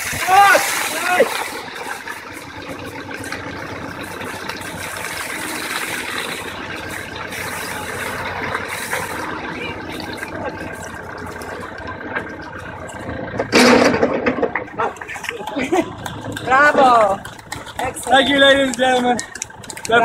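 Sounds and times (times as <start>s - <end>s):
diesel engine running: 0.0s - 20.0s.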